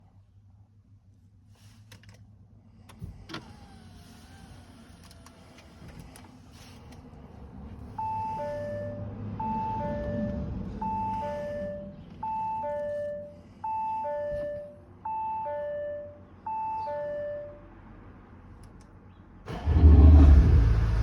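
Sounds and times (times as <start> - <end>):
diesel engine starting and running: 1.6 - 21.0
two-tone warning chime: 8.0 - 17.6.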